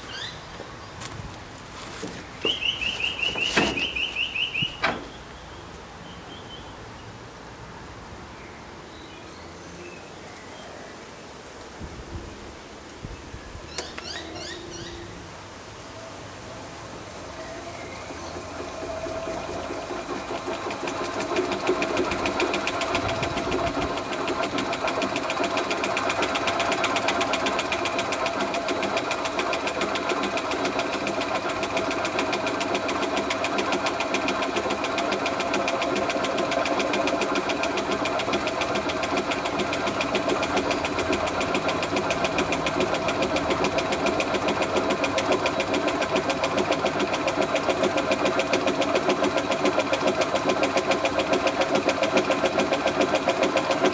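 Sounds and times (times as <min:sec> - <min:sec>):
pulsing water pump: 0:18.0 - 0:53.9.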